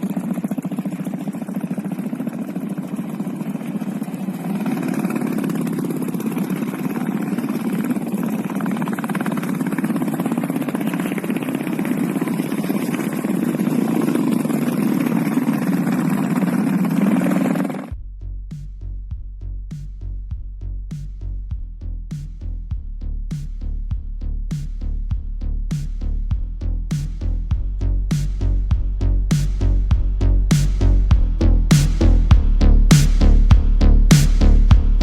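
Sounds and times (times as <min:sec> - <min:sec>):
motorcycle engine running: 0:00.0 - 0:35.0
electronic music with steady beat: 0:18.5 - 0:35.0.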